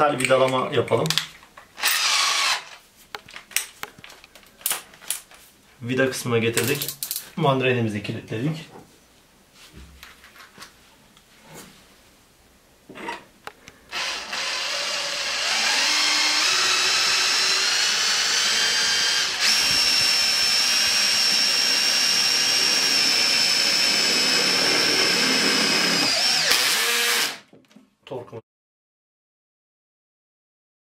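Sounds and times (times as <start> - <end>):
drill motor whining: 1.8 - 2.8, 13.9 - 27.4.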